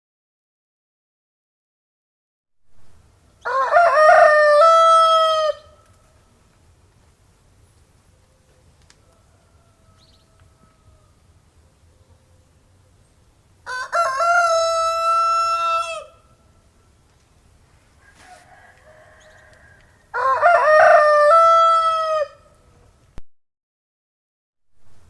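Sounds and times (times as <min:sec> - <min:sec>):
rooster crowing: 0:03.4 - 0:05.8, 0:09.0 - 0:11.3, 0:13.6 - 0:16.4, 0:18.0 - 0:22.7.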